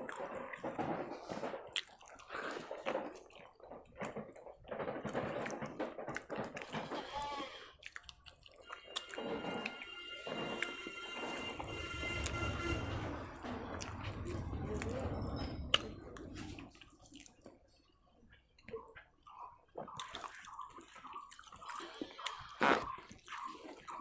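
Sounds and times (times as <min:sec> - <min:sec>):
wet squishy eating by hand: 0:18.6 - 0:24.0.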